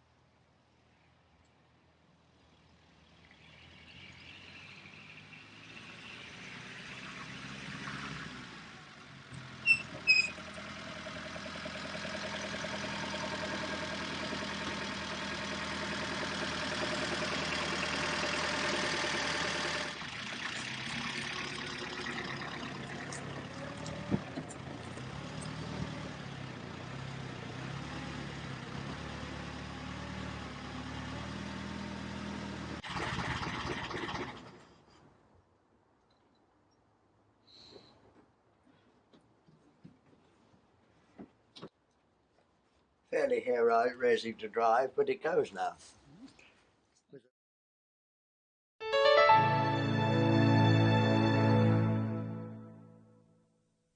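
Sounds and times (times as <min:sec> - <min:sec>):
small car engine running: 0:03.0 - 0:35.0.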